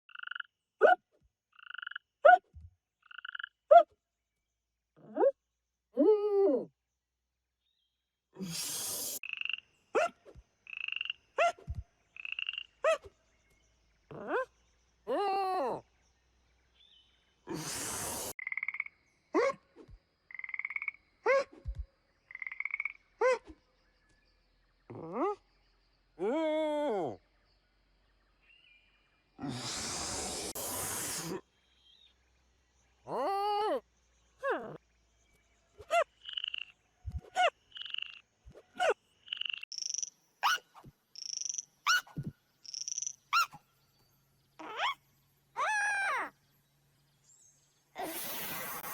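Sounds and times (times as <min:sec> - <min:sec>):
cartoon frog croaking: 0:00.1 - 0:00.5, 0:01.6 - 0:02.4, 0:03.0 - 0:03.6, 0:35.8 - 0:38.2, 0:38.8 - 0:40.6, 0:41.2 - 0:43.6
burst of hiss: 0:08.4 - 0:09.2, 0:17.5 - 0:18.4, 0:29.4 - 0:31.4, 0:48.0 - 0:48.9.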